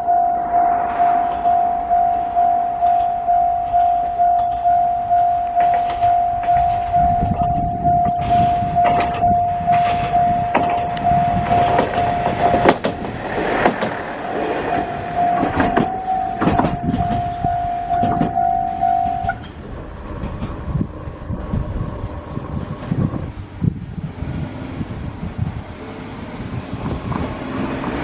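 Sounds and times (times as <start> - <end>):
level crossing bell ringing: 0.0 - 13.3, 14.2 - 19.4
diesel railcar passing: 0.0 - 28.0
train wheels knocking on rail joints: 5.6 - 23.2.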